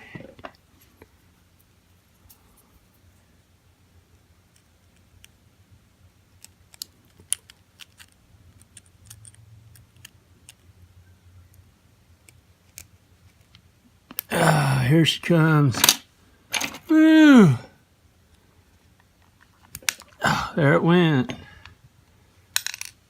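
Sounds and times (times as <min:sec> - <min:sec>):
metallic clicks of padlock parts: 0:06.4 - 0:10.6.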